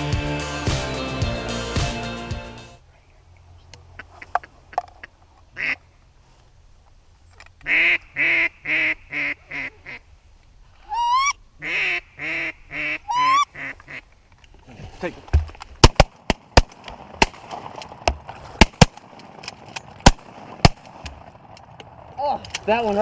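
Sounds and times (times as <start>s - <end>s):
duck quacking: 3.9s - 5.8s, 7.6s - 10.0s, 10.9s - 14.0s
rising squealing calls: 10.8s - 11.4s, 13.1s - 13.6s.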